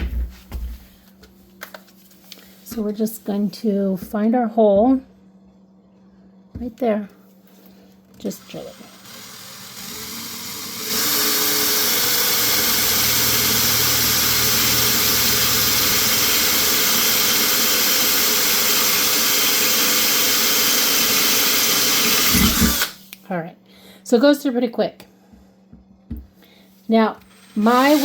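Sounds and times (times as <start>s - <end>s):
electric drill boring through metal: 8.2s - 23.0s, 27.2s - 28.0s.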